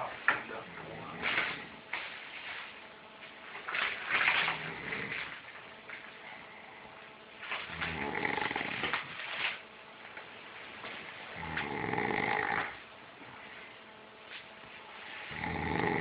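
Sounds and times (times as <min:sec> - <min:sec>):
pet snoring: 0:04.5 - 0:05.4, 0:07.6 - 0:09.2, 0:11.3 - 0:12.8, 0:15.1 - 0:16.0.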